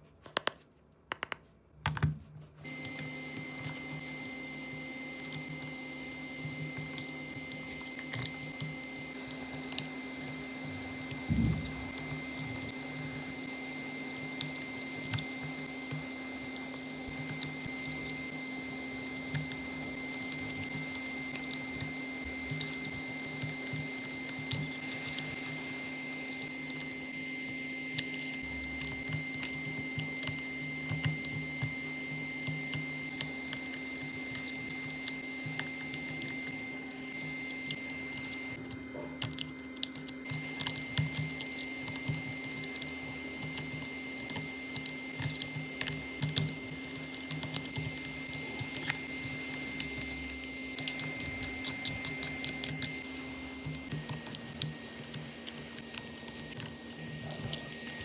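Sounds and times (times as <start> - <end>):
small tools clicking and tapping: 0.2 - 13.3, 37.2 - 58.0
machine hum with high whine: 1.8 - 58.0.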